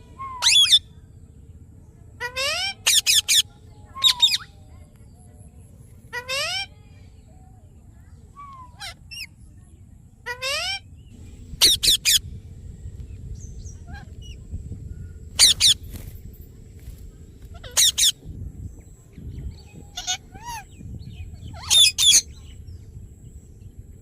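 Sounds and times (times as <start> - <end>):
parakeet shrill calls: 0.2 - 0.8, 2.2 - 3.4, 4.0 - 4.5, 11.6 - 12.2, 15.4 - 15.9, 17.5 - 18.2, 19.8 - 20.8, 21.4 - 22.3
parakeet soft chirps: 0.2 - 0.8, 11.5 - 12.3, 15.0 - 15.9, 17.5 - 18.2, 18.8 - 22.5.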